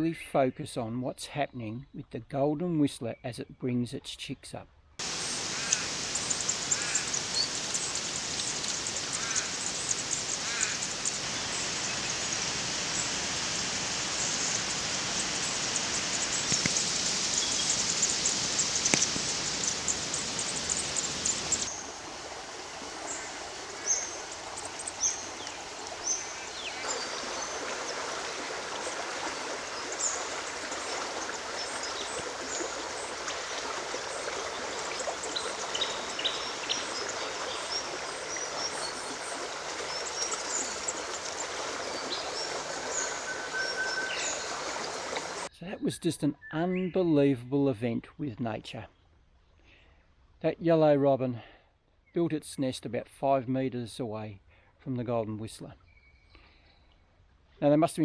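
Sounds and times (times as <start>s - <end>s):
small birds chirping: 5.0s - 45.5s
steady rushing hiss: 5.0s - 45.5s.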